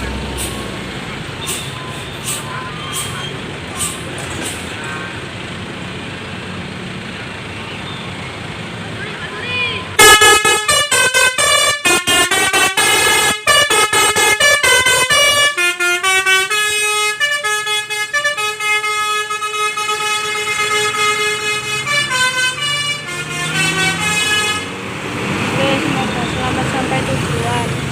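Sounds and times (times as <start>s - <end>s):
bus melody horn playing a tune: 10.0s - 24.8s.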